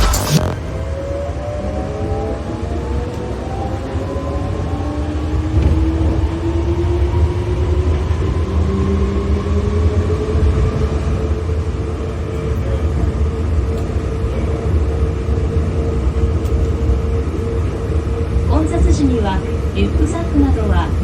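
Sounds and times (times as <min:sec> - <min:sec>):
train motor whine: 0:00.0 - 0:06.2.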